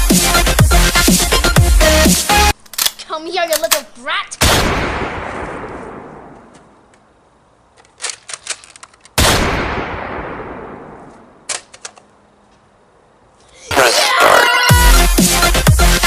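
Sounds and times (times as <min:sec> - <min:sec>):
music: 0:00.0 - 0:02.5, 0:14.6 - 0:16.0
gunshot with echoing tail: 0:09.2 - 0:11.1.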